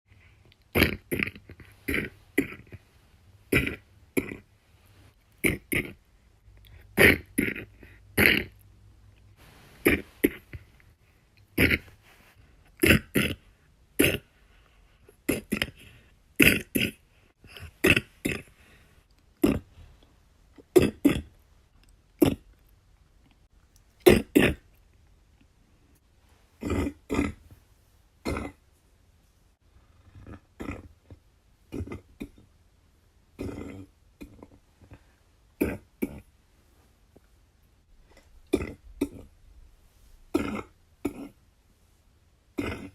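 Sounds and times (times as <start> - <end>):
person coughing wet coughs: 20.6 - 21.3, 24.0 - 24.7, 40.3 - 41.3.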